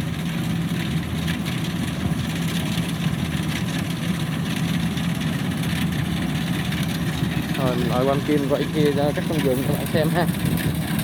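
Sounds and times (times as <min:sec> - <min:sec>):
combine harvester diesel engine: 0:00.0 - 0:11.0
machinery noise: 0:07.5 - 0:11.0.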